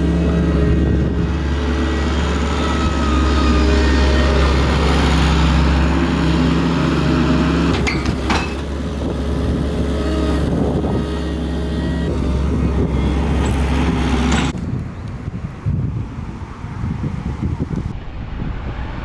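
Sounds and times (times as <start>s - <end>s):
large engine running: 0.0s - 14.6s.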